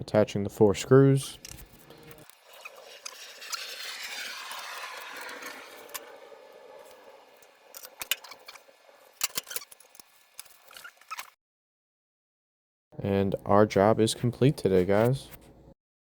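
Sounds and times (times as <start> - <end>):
rushing metal scrape: 1.5 - 11.4.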